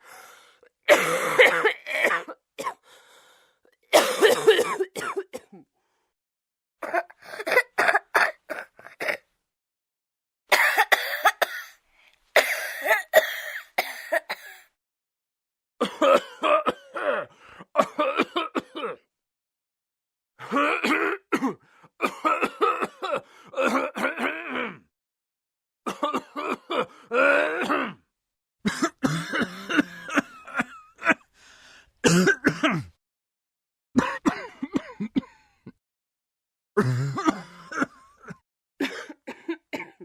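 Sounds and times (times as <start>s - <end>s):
person coughing: 0.9s - 2.8s, 3.9s - 5.7s, 6.8s - 9.2s, 10.5s - 11.8s, 12.4s - 14.7s, 15.8s - 19.1s, 20.5s - 24.9s, 25.9s - 28.0s, 28.7s - 31.3s, 32.0s - 33.0s, 34.0s - 35.8s, 36.8s - 40.0s
throat clearing: 32.1s - 33.0s, 36.8s - 40.0s.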